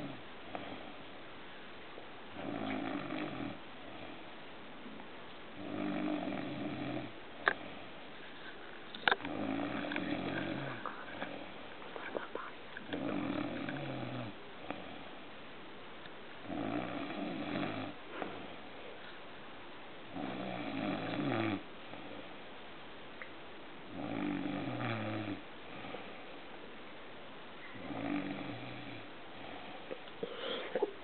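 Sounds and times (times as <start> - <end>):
man snoring: 2.4 - 3.6, 5.6 - 7.1, 9.3 - 11.4, 12.9 - 14.4, 16.4 - 18.0, 20.1 - 21.6, 23.9 - 25.4, 27.8 - 29.0.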